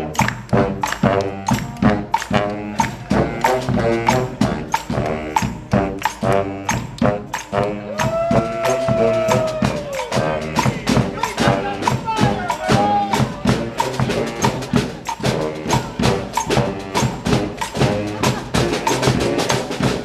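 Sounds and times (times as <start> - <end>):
brass horns in harmony: 0.0 - 20.0
busy drum beat: 0.0 - 20.0.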